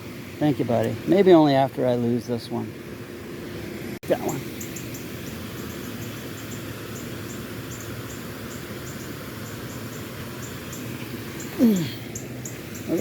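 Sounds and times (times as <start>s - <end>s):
low outdoor hum: 0.0s - 13.0s
insects chirping: 4.1s - 13.0s.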